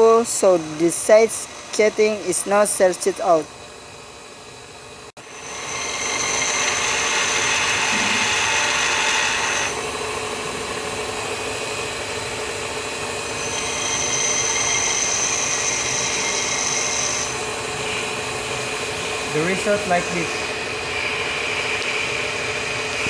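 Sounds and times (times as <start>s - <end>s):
bench grinder running: 0.0s - 23.0s
grinding hiss with high whine: 12.3s - 23.0s.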